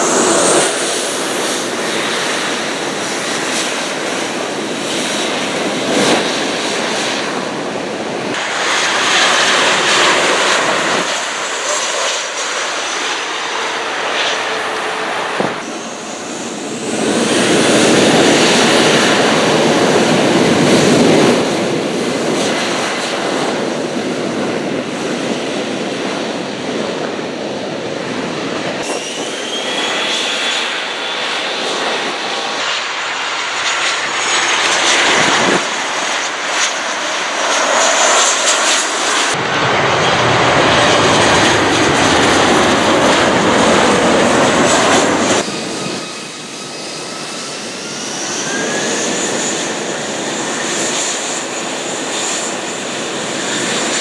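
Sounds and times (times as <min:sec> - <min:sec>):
high rising whines: 0:00.0 - 0:02.9, 0:08.4 - 0:19.7
aircraft engines running: 0:00.0 - 0:54.0.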